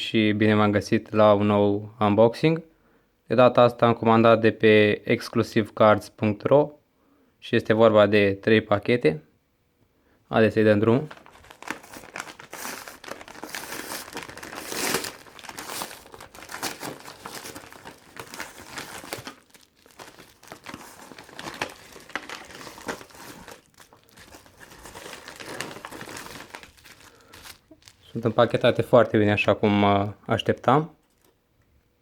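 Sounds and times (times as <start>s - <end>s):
packaging rustling and crackling: 11.0s - 29.1s, 31.0s - 31.4s.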